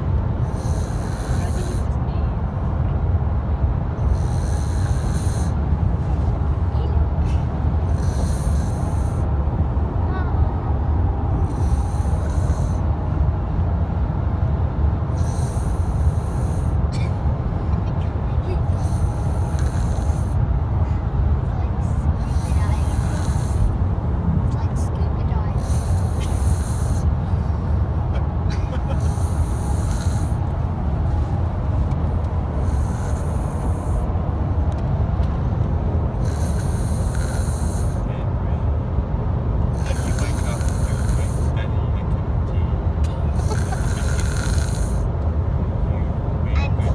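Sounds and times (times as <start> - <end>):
vehicle rumbling: 0.0 - 46.9
snoring with hissing breaths: 0.4 - 2.0, 4.0 - 5.7, 7.4 - 9.3, 11.3 - 13.0, 15.1 - 16.8, 18.6 - 20.5, 21.7 - 24.0, 25.5 - 27.2, 28.9 - 30.6, 32.4 - 34.1, 36.1 - 38.1, 39.7 - 41.6, 43.2 - 45.1.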